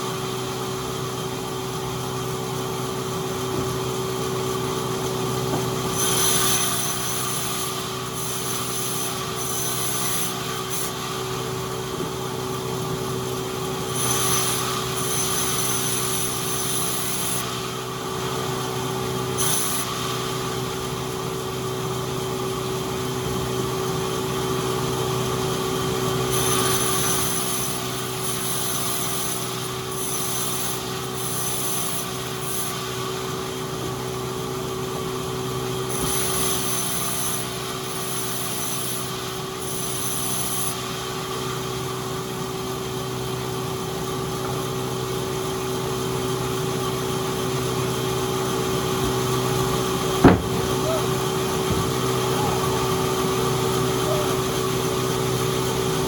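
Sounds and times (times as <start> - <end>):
sawmill machinery humming: 44.0 - 56.0.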